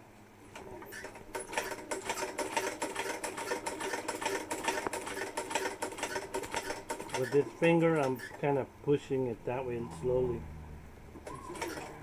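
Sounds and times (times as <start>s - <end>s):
sewing machine stitching: 0.6s - 8.6s, 11.2s - 12.0s.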